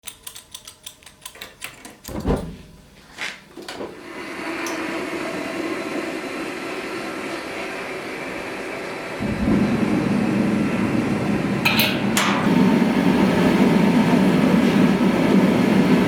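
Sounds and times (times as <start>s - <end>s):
igniter rapid clicks: 0.0s - 2.1s
forge burner roaring: 3.7s - 16.0s.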